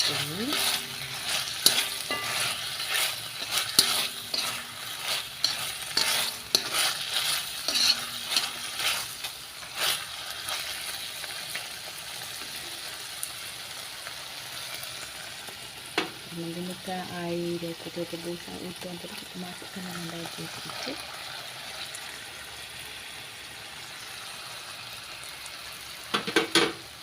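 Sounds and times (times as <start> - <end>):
utensil knocking and scraping pan: 0.0 - 9.1
meat sizzling in a pan: 0.0 - 27.0.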